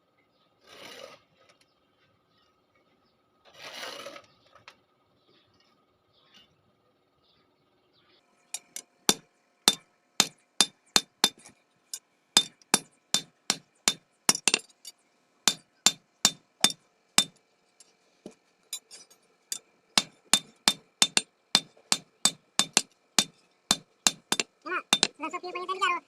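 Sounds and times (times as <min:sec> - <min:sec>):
faint metallic ringing: 0:08.4 - 0:25.2
hammer striking metal on anvil: 0:08.6 - 0:11.5, 0:12.4 - 0:17.9, 0:18.8 - 0:25.2.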